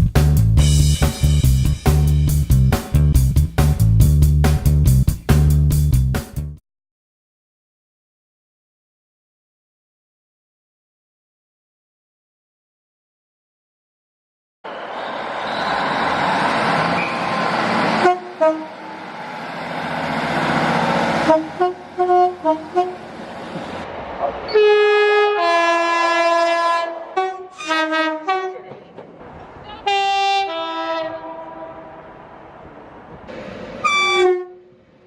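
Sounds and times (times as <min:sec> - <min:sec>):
train rushing past: 0:14.7 - 0:35.0
two-tone train horn blasts: 0:17.7 - 0:19.0, 0:21.2 - 0:23.1, 0:24.5 - 0:28.8, 0:29.7 - 0:32.2, 0:33.8 - 0:34.9
short train horn toots: 0:17.9 - 0:19.0, 0:21.2 - 0:23.0, 0:24.5 - 0:28.8, 0:29.8 - 0:32.1, 0:33.8 - 0:34.8.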